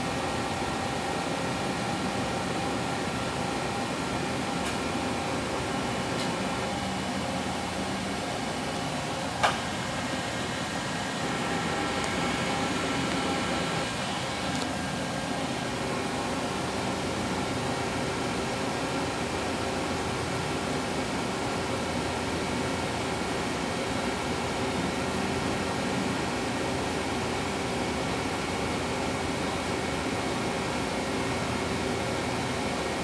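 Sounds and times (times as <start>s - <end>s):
machinery humming: 10.2s - 15.9s.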